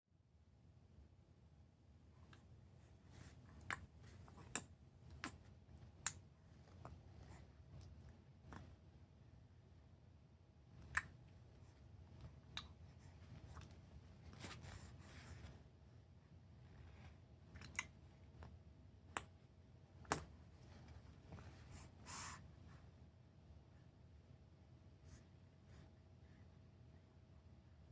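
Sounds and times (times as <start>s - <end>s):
baby soft breath: 21.3s - 22.8s.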